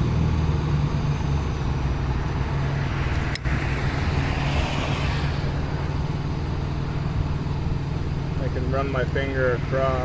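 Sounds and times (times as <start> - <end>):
engine idling: 0.0 - 10.0
road traffic noise: 0.0 - 10.0
rushing noise: 1.8 - 8.4.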